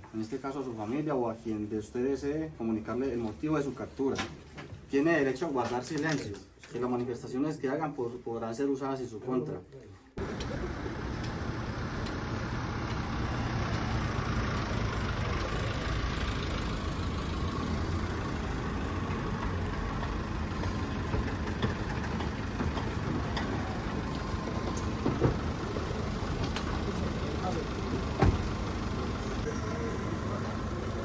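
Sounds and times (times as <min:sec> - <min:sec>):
vehicle engine rumbling: 0:10.2 - 0:31.0.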